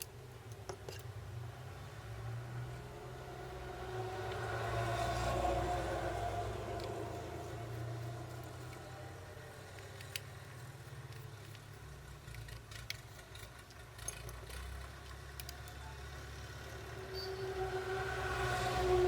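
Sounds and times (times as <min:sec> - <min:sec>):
steady horn or siren tone: 0:17.0 - 0:19.0.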